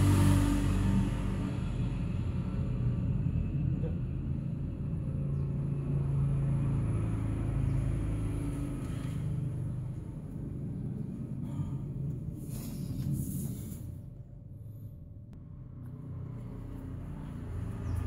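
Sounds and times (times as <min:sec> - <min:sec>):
steady low rumble: 0:00.7 - 0:07.3, 0:08.1 - 0:18.0
rustling noise: 0:12.3 - 0:14.2.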